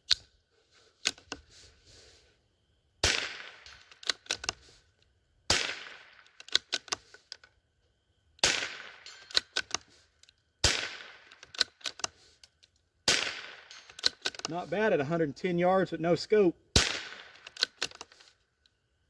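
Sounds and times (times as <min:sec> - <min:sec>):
rifle shots: 0:03.0 - 0:04.2, 0:05.5 - 0:06.4, 0:08.4 - 0:09.7, 0:10.6 - 0:11.8, 0:13.0 - 0:14.3, 0:16.7 - 0:17.9
rifle action clicks: 0:03.6 - 0:04.6, 0:05.6 - 0:07.5, 0:08.6 - 0:12.6, 0:13.2 - 0:14.5, 0:16.8 - 0:18.7.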